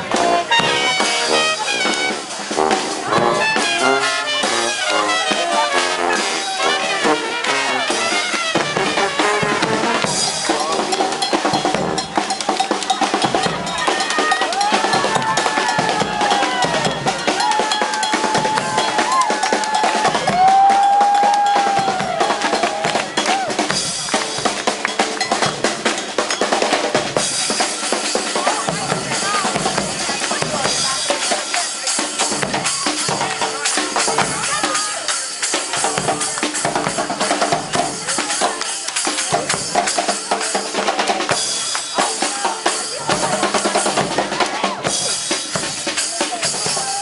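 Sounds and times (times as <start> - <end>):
brass horns playing: 0.0 - 12.4
snare and bass drums: 0.0 - 47.0.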